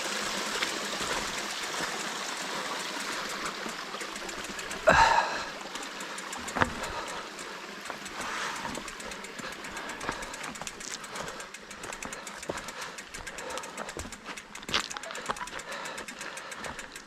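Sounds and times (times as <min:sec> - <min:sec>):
fast ticking: 0:00.0 - 0:17.0
mountain bike rattling on rocks: 0:00.0 - 0:17.0.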